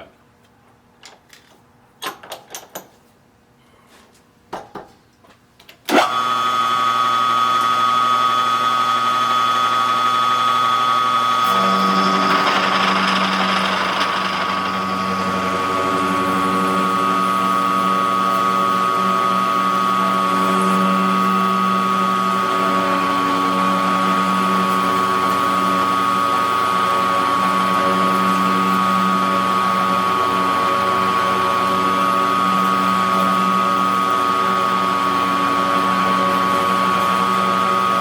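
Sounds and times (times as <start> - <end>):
machine tool motor whining: 9.1 - 19.1
cutter under load: 10.2 - 18.8.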